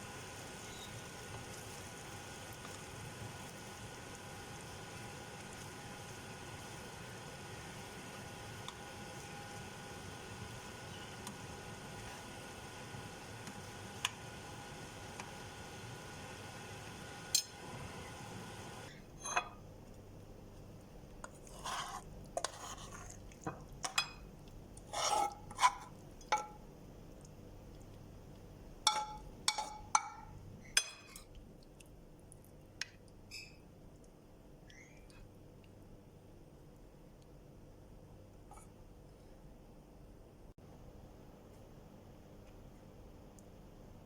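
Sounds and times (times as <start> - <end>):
steady hum with ticks: 0.4 - 12.2, 12.9 - 14.3, 25.5 - 39.2, 41.4 - 44.0.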